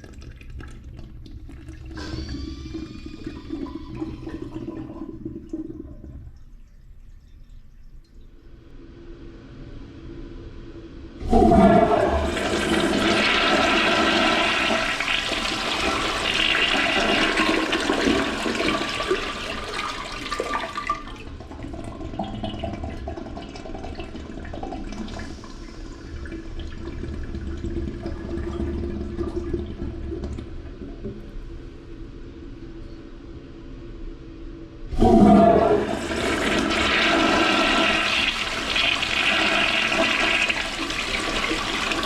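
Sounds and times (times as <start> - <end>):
toilet flushing: 0.0 - 6.7, 11.2 - 31.4, 34.9 - 42.0
water running: 11.2 - 29.8, 34.9 - 42.0.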